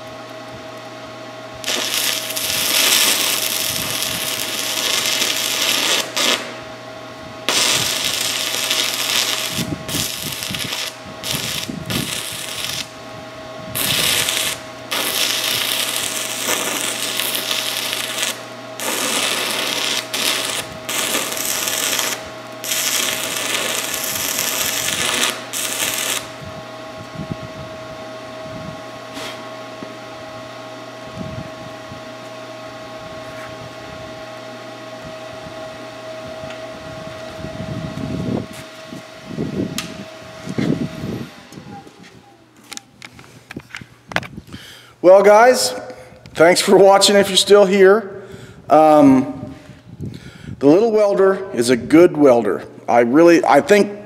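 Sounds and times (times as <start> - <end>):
steady hum: 0.0 - 54.0
welding arc crackling and hissing: 1.6 - 6.6, 7.4 - 13.0, 13.7 - 26.4.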